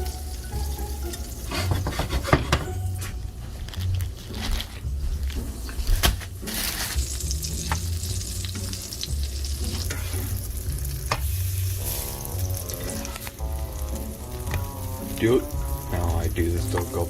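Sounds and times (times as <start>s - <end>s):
bread sizzling in a pan: 0.0s - 2.6s, 3.4s - 17.0s
utensil knocking and scraping: 1.1s - 2.8s
steady pitched hum: 7.6s - 16.5s.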